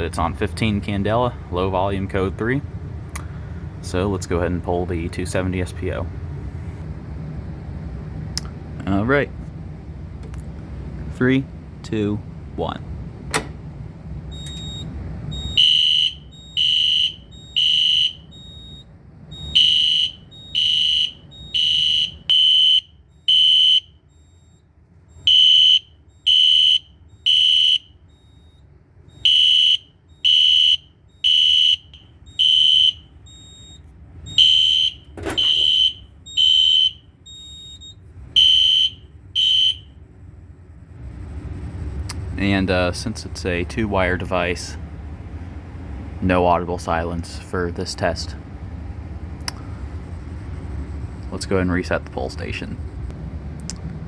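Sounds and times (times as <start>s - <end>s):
high-pitched alarm horn blasts: 15.4s - 18.7s, 19.3s - 24.5s, 25.2s - 28.5s, 29.1s - 33.7s, 34.3s - 37.6s, 38.4s - 40.0s.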